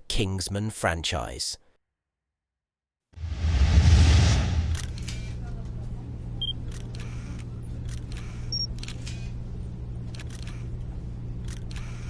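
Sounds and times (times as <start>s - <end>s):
steady low hum: 3.4s - 12.0s.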